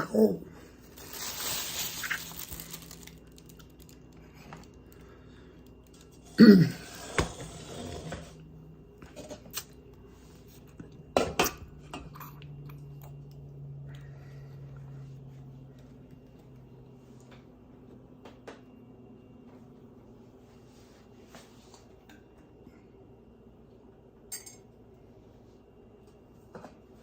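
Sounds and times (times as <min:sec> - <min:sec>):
dishes and utensils clinking: 0:24.3 - 0:24.7.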